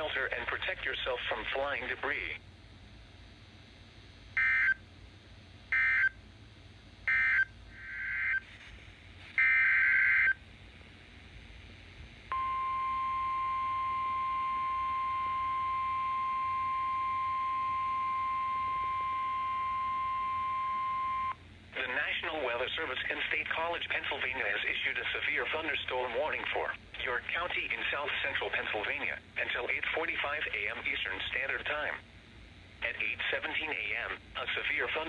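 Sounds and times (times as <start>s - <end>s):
steady alarm tone: 9.4s - 10.4s, 12.3s - 21.4s.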